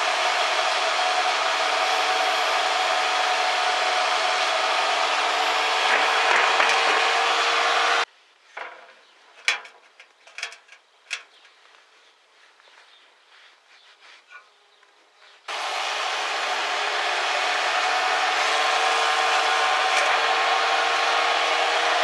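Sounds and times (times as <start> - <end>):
power tool motor whirring: 0.0 - 8.1, 15.5 - 22.0
tools clicking and knocking: 8.6 - 11.5.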